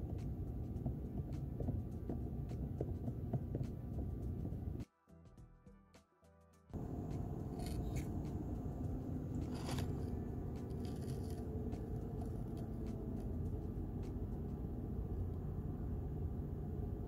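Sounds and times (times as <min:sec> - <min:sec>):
steady low rumble: 0:00.0 - 0:04.8, 0:06.8 - 0:17.0
light scrapes: 0:09.3 - 0:13.3.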